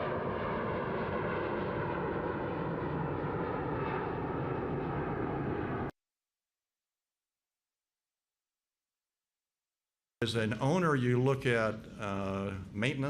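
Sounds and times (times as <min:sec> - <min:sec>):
jet engine roar: 0:00.0 - 0:05.9.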